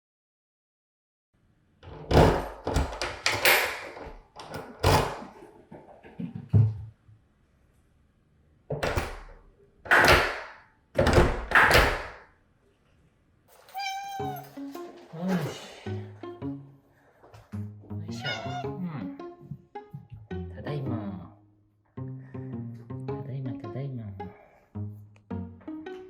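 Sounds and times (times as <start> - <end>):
thuds and rattling knocks: 1.8 - 5.4, 8.7 - 12.2.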